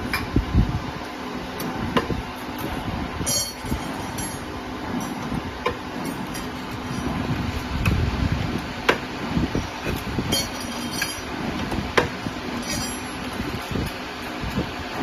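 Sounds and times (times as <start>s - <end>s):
factory machinery rumbling: 0.0s - 15.0s
metallic clinks and knocks: 3.2s - 5.3s, 10.3s - 11.3s, 12.6s - 13.3s
metal clatter: 3.2s - 7.2s, 9.7s - 14.3s.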